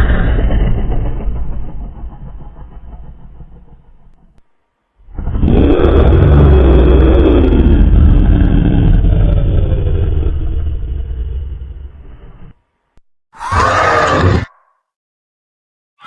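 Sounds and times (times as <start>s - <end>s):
deep rumbling creature roar: 0.0s - 2.8s, 5.0s - 12.6s, 13.4s - 14.7s.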